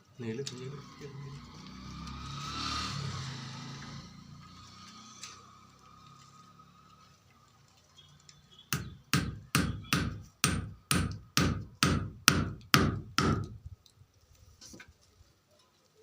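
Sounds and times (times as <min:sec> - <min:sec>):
hammer driving a nail: 0:08.7 - 0:13.6.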